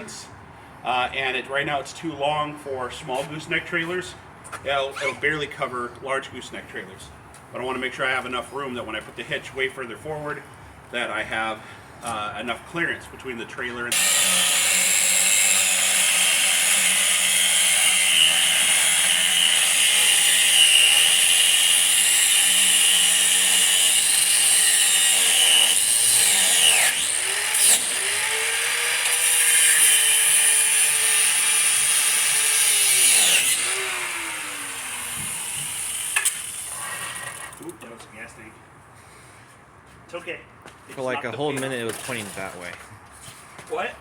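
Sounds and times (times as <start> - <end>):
cut-off wheel cutting steel: 13.9 - 37.6.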